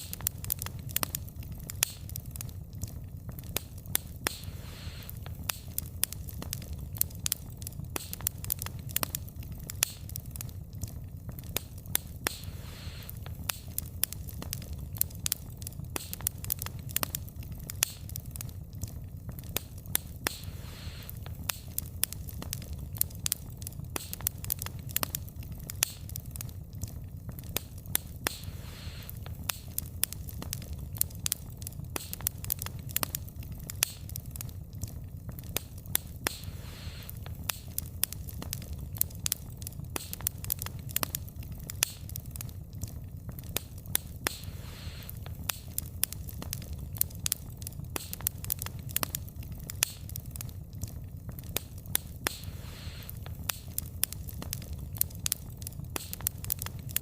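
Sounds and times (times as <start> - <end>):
crackles and pops from logs: 0.0 - 57.0
low rumble of flame: 0.0 - 57.0
soft hiss of fire: 0.0 - 57.0.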